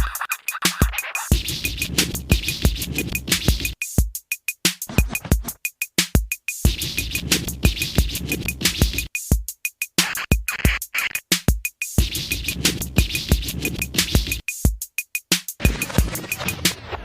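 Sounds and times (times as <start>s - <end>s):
hip-hop drum-machine beat: 0.0s - 17.0s.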